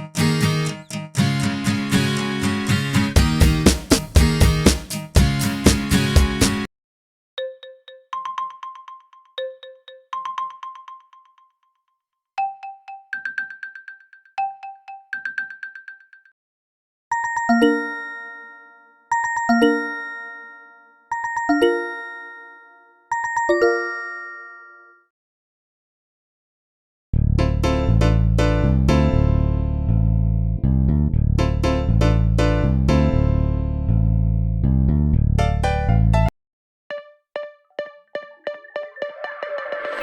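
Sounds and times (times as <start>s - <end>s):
bell-like chime ringtone: 7.4s - 11.5s, 12.4s - 16.3s, 17.1s - 25.1s, 36.9s - 40.0s
marimba-like ringtone melody: 7.4s - 11.8s, 12.4s - 16.3s, 17.1s - 25.0s, 36.9s - 40.0s.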